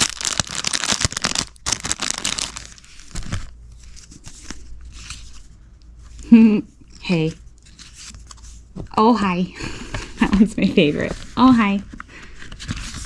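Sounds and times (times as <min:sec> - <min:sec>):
paper crinkling and tearing: 0:00.0 - 0:06.4, 0:07.0 - 0:08.6, 0:10.3 - 0:13.0.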